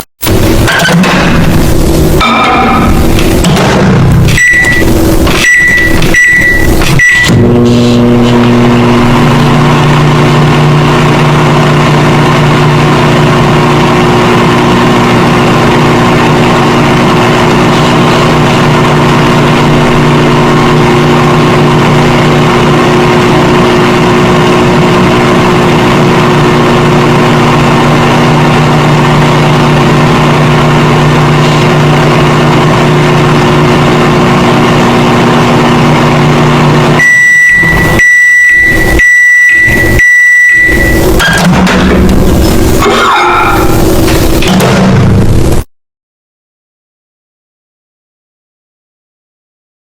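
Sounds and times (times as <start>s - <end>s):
microwave oven humming: 0.0s - 45.6s
microwave keypad beeps: 4.4s - 7.4s, 37.0s - 41.2s.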